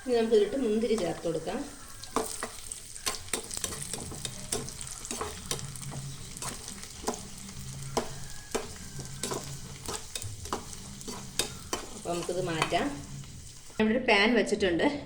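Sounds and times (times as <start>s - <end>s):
nuts frying in a pan: 0.0s - 13.8s
utensil clicking against pan: 1.8s - 13.8s.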